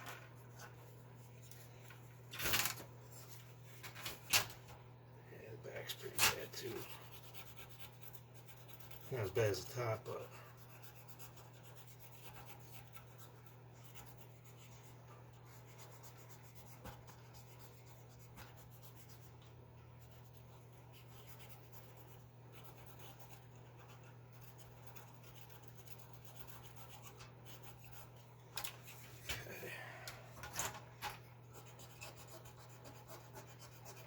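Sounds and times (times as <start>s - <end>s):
steady low hum: 0.0s - 34.0s.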